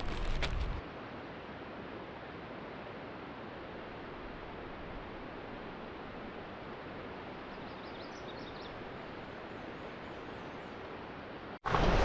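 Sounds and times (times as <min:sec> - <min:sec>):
river water rushing: 0:11.6 - 0:12.0.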